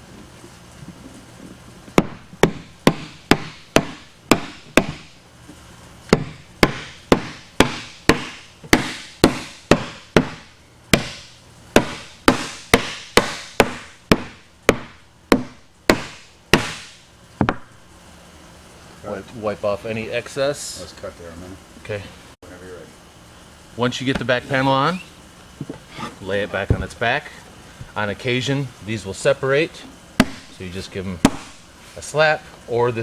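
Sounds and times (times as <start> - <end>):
rubber mallet striking wood: 2.0 - 5.1, 6.1 - 17.7, 30.2 - 30.6, 31.2 - 31.6.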